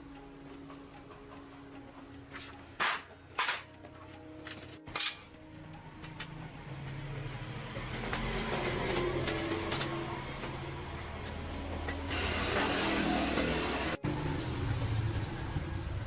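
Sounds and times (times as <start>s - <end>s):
metal tools clinking: 4.4s - 5.4s.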